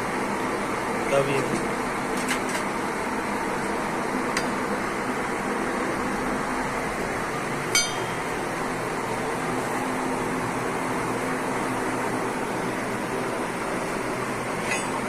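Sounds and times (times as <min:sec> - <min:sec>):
machinery whirring hum: 0:00.0 - 0:15.0
sharp metallic clink: 0:07.8 - 0:08.4.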